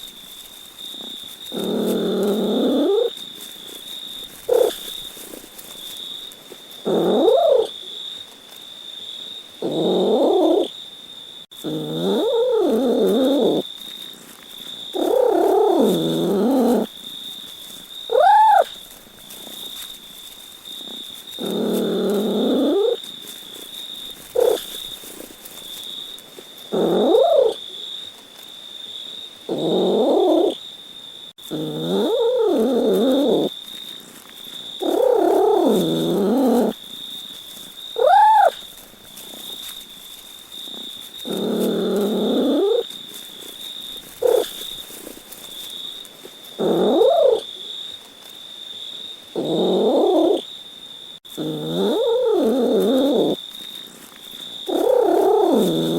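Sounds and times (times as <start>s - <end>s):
cat meowing: 7.0s - 7.7s, 18.1s - 18.7s, 26.8s - 27.6s, 38.0s - 38.6s.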